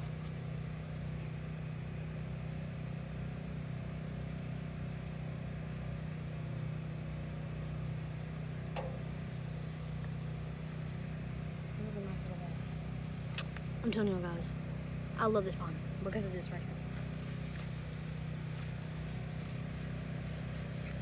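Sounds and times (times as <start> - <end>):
low mechanical hum: 0.0 - 21.0
sharp click: 8.8 - 9.0.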